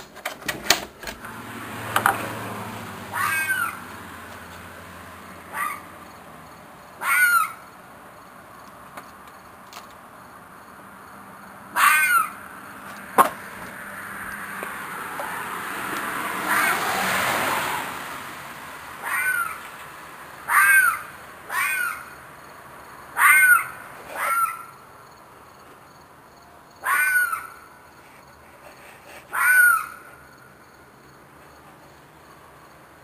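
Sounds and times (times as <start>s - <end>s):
animal screeching cries: 3.1s - 3.8s, 5.5s - 5.9s, 7.0s - 7.7s, 11.8s - 12.4s, 16.5s - 17.0s, 19.0s - 19.6s, 20.5s - 22.2s, 23.2s - 24.7s, 26.8s - 27.7s, 29.2s - 30.2s.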